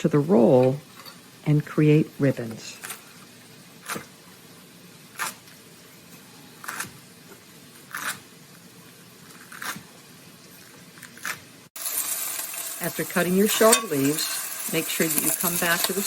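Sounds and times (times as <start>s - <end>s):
knife cutting leaves on board: 7.8s - 8.2s.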